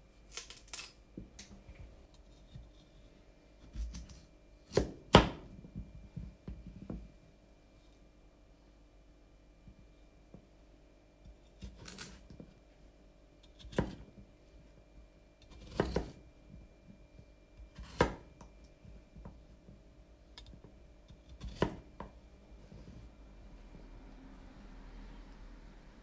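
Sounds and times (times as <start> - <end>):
knife cutting vegetables on board: 3.6 - 5.5, 11.4 - 12.2, 15.4 - 16.2, 17.7 - 18.3, 21.1 - 22.1.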